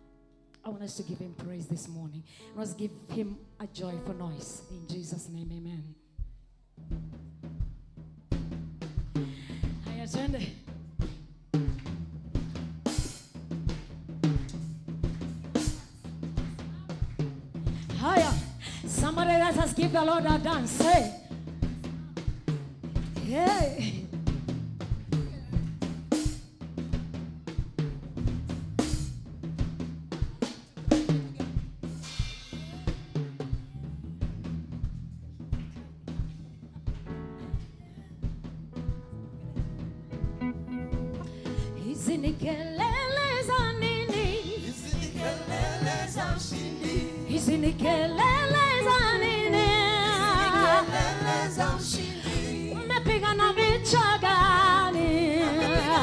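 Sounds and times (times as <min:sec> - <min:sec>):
drum kit playing: 0:03.0 - 0:56.0
low bass notes: 0:33.6 - 0:56.0
held low note: 0:40.2 - 0:41.8.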